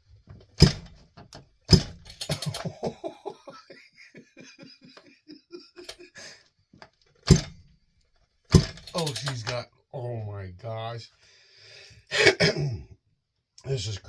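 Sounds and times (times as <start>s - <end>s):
loud sharp thumps: 0.5s - 2.8s, 7.2s - 7.7s, 8.5s - 9.5s
man laughing: 2.3s - 6.4s.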